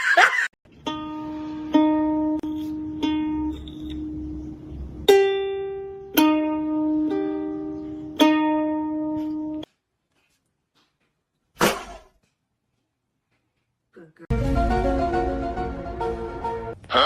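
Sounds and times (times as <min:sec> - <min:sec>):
slow plucked-string melody: 0:00.7 - 0:09.7, 0:14.3 - 0:16.8.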